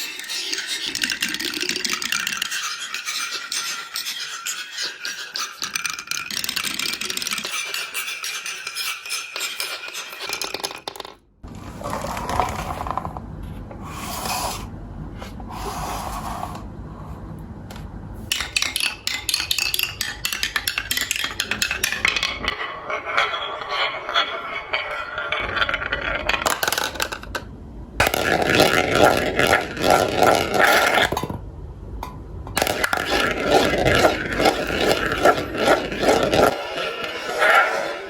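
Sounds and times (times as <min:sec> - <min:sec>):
marbles clattering down a marble run: 0:00.0 - 0:08.7, 0:09.3 - 0:11.2, 0:18.3 - 0:31.3, 0:32.6 - 0:37.4.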